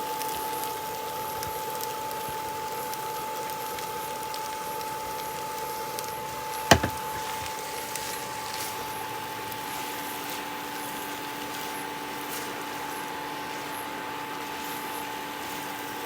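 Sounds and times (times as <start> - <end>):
utensil knocking against pan: 6.7 - 7.2.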